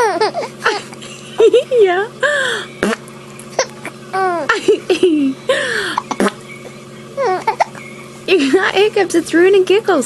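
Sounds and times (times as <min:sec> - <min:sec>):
baby giggling and cooing: 0:00.0 - 0:01.7, 0:02.4 - 0:06.4, 0:07.2 - 0:07.8
baby hiccups: 0:07.2 - 0:07.8.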